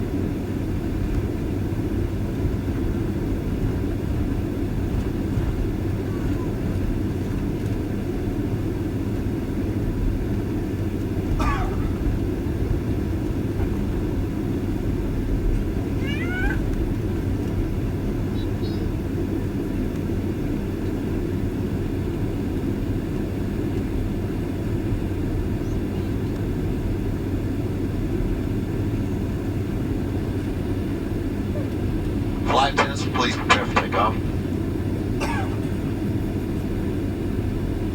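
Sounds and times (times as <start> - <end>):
jet engines rumbling: 28.8 - 37.1.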